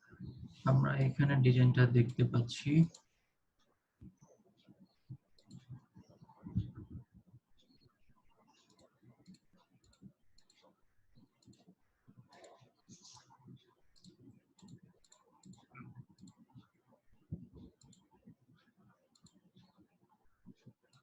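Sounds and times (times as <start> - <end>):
computer mouse clicking: 4.0 - 6.7, 8.5 - 12.8, 13.9 - 16.7, 17.4 - 18.2, 19.1 - 19.9, 20.5 - 21.0.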